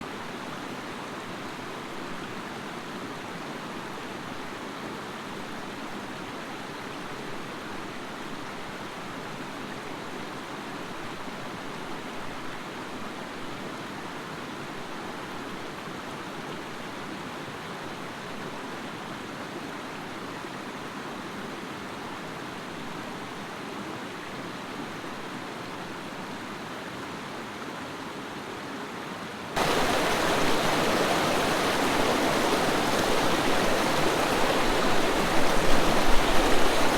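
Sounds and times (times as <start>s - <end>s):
creek water rushing over rocks: 29.6s - 36.9s.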